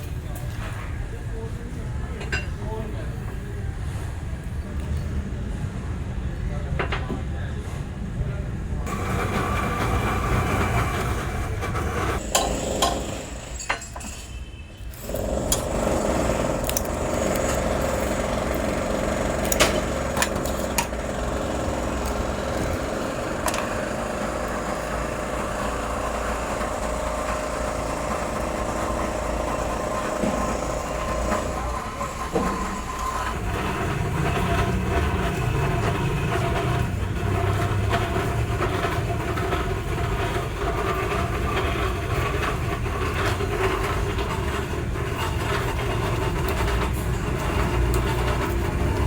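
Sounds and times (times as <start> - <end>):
workshop machinery running: 0.0 - 49.0
metal knocks and clanks: 15.2 - 31.6.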